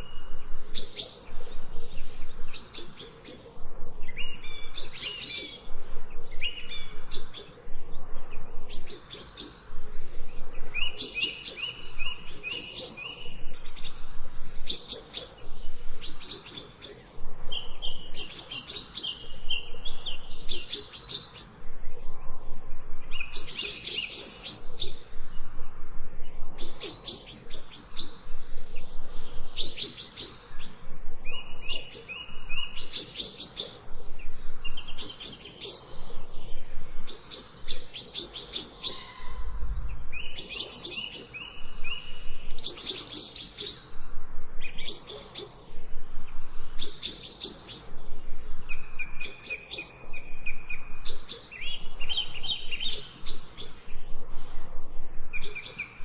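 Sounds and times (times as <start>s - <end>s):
songbirds trilling: 0.0s - 56.0s.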